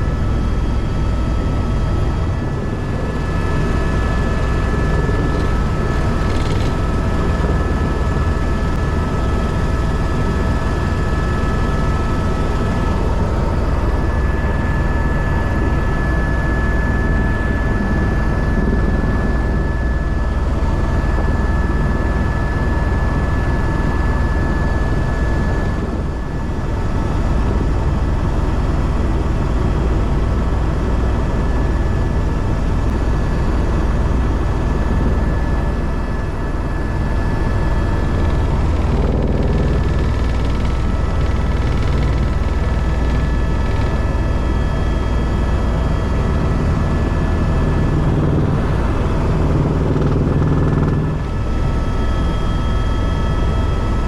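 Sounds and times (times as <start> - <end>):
helicopter engine and rotor drone: 0.0 - 54.0
high whine: 32.9 - 54.0.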